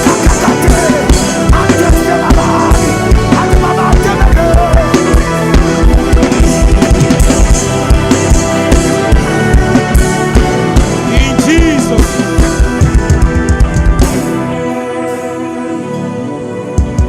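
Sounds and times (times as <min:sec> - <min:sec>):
drum kit steady beat: 0:00.0 - 0:14.5, 0:16.8 - 0:17.0
worship music: 0:00.0 - 0:17.0.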